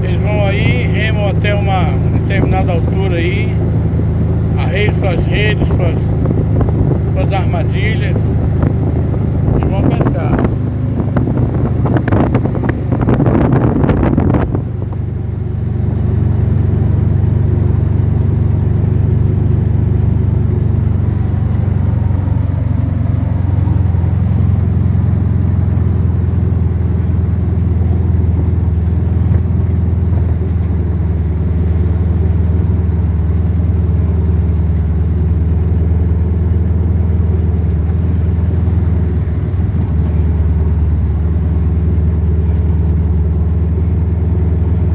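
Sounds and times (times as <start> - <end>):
rush of noise: 0.0 - 14.8
vehicle engine humming: 0.0 - 44.9.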